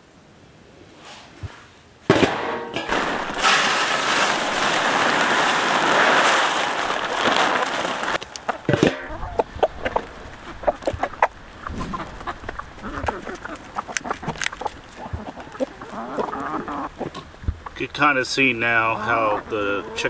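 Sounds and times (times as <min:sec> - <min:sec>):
grain pouring onto metal: 0:02.8 - 0:08.2.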